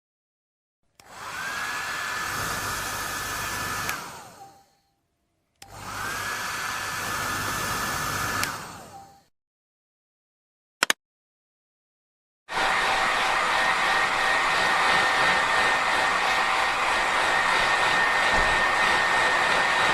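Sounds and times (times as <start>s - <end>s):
hair dryer switch click: 1.0s - 1.2s, 3.8s - 4.1s, 5.6s - 5.8s, 8.3s - 8.6s
hair dryer blowing: 1.0s - 4.7s, 5.6s - 9.1s, 12.5s - 19.9s.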